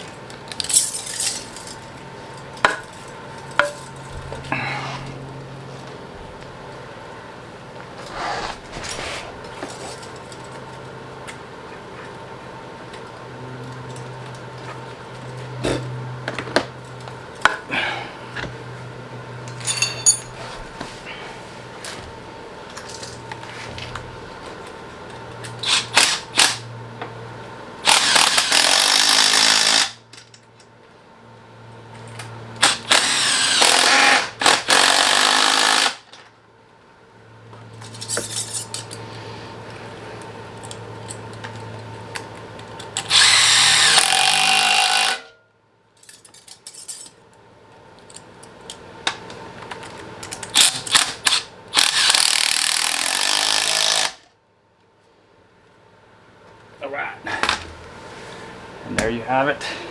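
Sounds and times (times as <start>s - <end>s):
clicks and clinks of tools: 0.3s - 4.1s, 19.5s - 20.4s, 46.0s - 47.4s
electric ratchet spinning: 25.6s - 26.7s, 27.8s - 30.0s, 32.6s - 36.1s, 43.0s - 45.2s, 50.5s - 54.2s.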